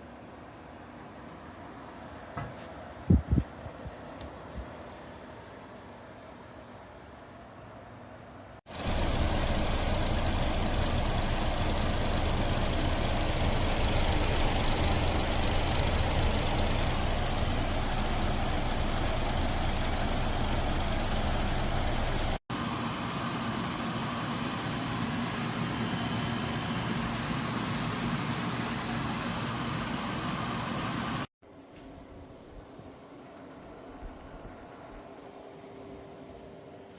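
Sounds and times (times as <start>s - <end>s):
air conditioner fan whoosh: 1.1s - 6.2s
low compressor hum: 8.7s - 31.2s.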